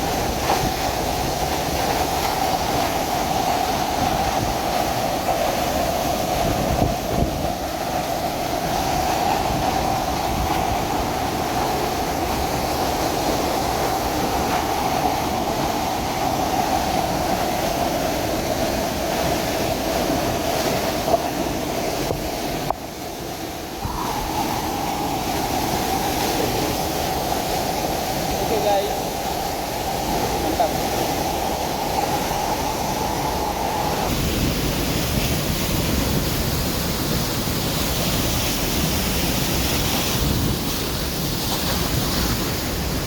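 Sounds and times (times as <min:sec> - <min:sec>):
waterfall rushing: 0:00.0 - 0:43.0.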